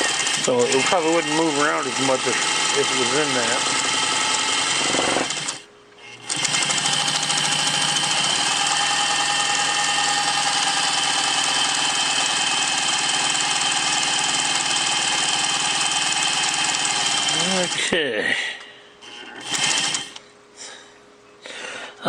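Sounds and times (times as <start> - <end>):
sewing machine stitching: 0.0 - 5.6, 6.2 - 17.9, 19.4 - 20.2.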